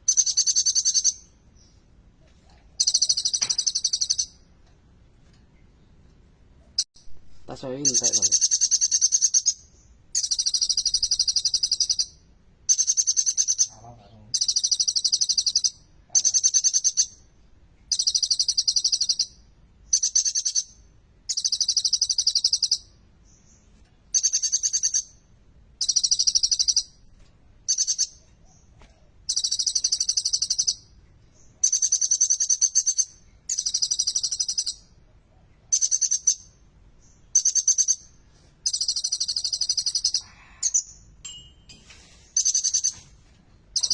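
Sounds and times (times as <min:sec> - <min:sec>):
sunbird singing trills: 0:02.8 - 0:04.4, 0:07.6 - 0:17.2, 0:17.9 - 0:25.2, 0:29.3 - 0:35.0, 0:35.7 - 0:43.0.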